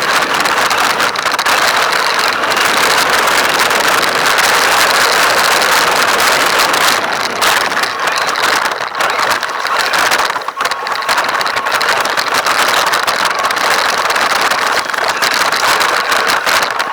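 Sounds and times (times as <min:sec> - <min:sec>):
radio-controlled car running: 0:00.0 - 0:16.9.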